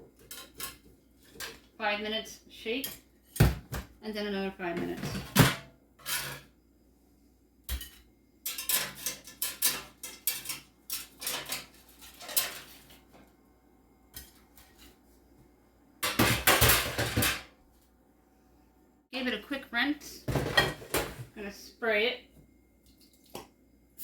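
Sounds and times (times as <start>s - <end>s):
kitchenware clattering: 0.0s - 1.8s, 4.7s - 6.5s, 7.7s - 13.3s, 16.0s - 17.6s, 20.2s - 21.3s
dishes and pans clinking: 0.1s - 1.7s, 4.8s - 6.5s, 7.7s - 13.2s, 16.0s - 17.5s, 20.3s - 21.3s.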